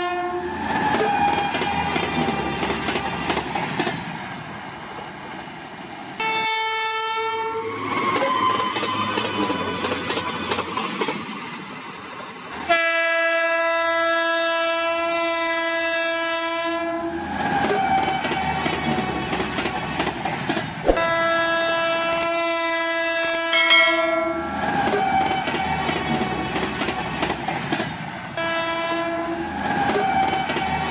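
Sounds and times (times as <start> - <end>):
electric locomotive horn blasts: 0.0 - 1.9, 6.2 - 9.0, 12.7 - 18.4, 21.0 - 25.8, 28.4 - 29.4
moving train running noise: 0.0 - 13.4, 14.0 - 30.9.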